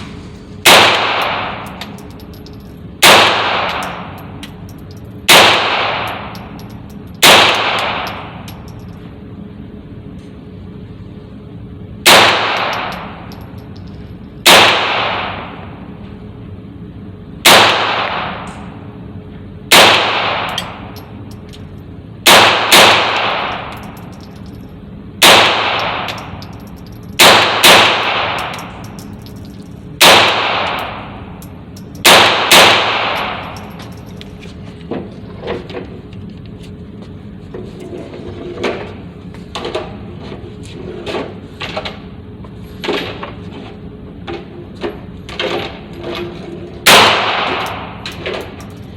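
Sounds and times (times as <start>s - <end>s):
gunshots with echo: 0.6s - 1.6s.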